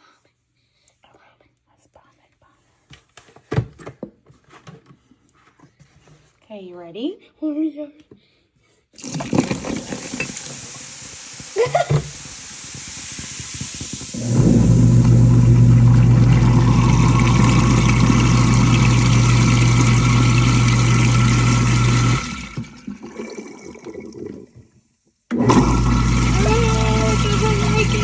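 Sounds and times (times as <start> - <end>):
garbage disposal motor hum: 9.0 - 24.7, 25.3 - 28.0
water running into sink: 9.0 - 28.0.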